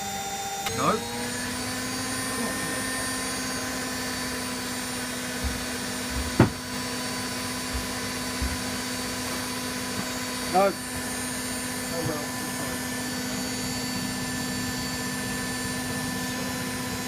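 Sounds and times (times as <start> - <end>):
washing machine motor whine: 0.0 - 17.0
sharp knock: 6.4 - 6.6.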